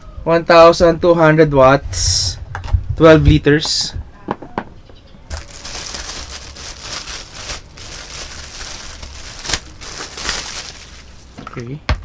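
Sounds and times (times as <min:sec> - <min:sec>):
plastic packaging crinkling: 0:05.3 - 0:11.4.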